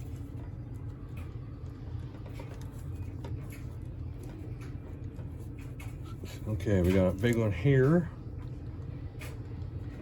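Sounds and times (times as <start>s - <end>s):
low hum: 0.0s - 6.4s.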